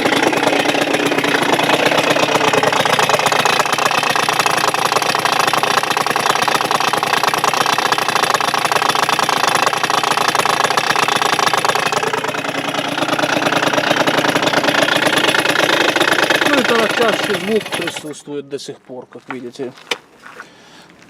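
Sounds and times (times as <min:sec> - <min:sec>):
rattling knock inside engine: 0:00.0 - 0:18.1
scooter engine running: 0:00.0 - 0:18.2.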